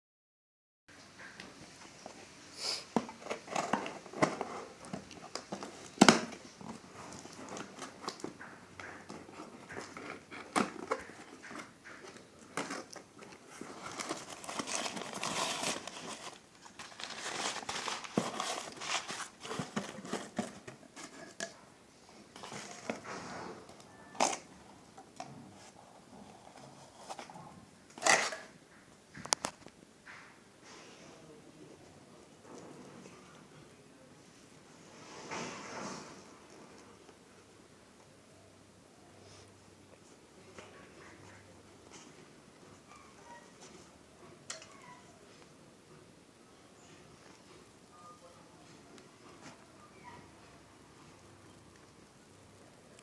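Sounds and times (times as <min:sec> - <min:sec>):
wrapping crinkling: 0:02.9 - 0:21.4.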